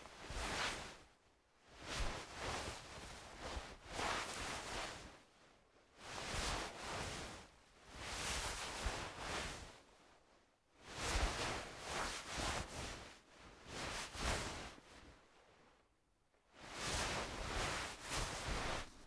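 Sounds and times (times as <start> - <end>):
fabric rustling swishes: 16.8 - 19.0.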